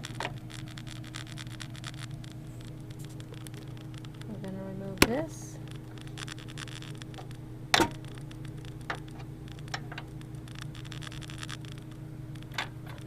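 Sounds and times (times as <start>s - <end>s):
steady low hum: 0.0s - 13.0s
clicks and knocks in computer case: 7.7s - 8.0s.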